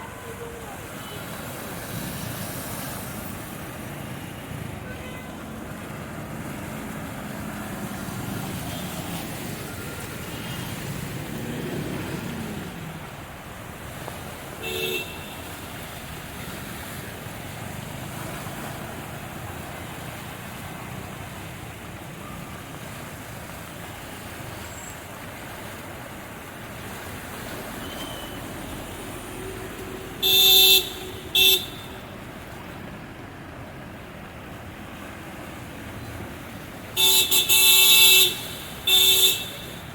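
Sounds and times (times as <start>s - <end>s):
traffic on wet street: 0.0s - 39.9s
car horn honks: 14.6s - 15.5s, 30.2s - 32.1s, 37.0s - 39.9s.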